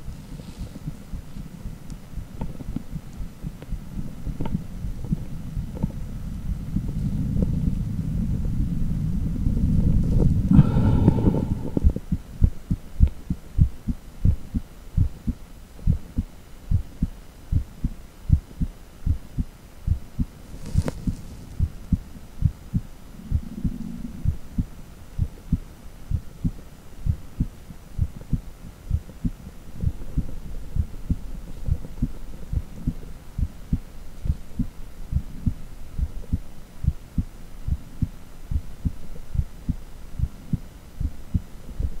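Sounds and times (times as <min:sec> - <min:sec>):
heartbeat thumps: 0:00.0 - 0:07.6, 0:09.5 - 0:42.0.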